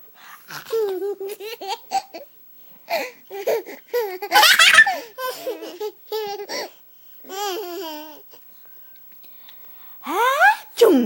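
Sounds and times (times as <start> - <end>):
baby laughing: 0.5 - 2.3, 2.9 - 6.7, 7.3 - 8.2.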